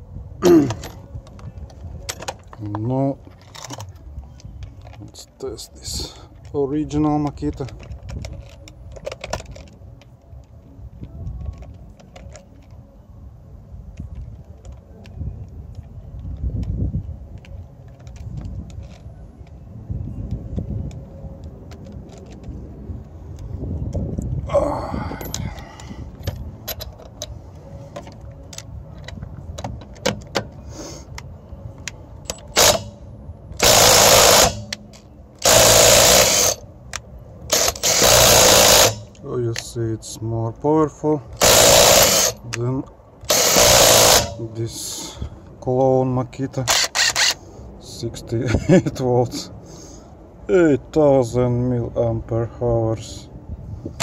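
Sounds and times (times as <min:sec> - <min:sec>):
impact wrench hammering: 0:32.3 - 0:33.0, 0:33.6 - 0:34.8, 0:35.4 - 0:36.6, 0:37.5 - 0:39.2, 0:41.4 - 0:42.4, 0:43.3 - 0:44.4.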